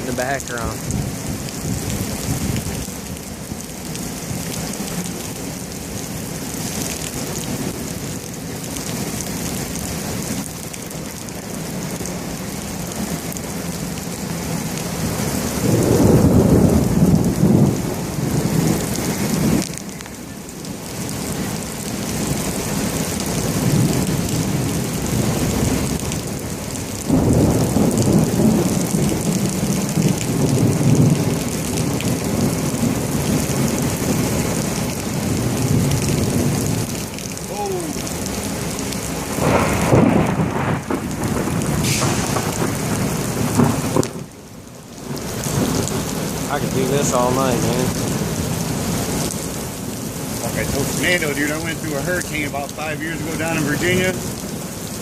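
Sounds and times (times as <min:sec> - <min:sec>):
heavy rain pouring: 0:00.0 - 0:55.0
thunder rumbling: 0:11.6 - 0:49.4.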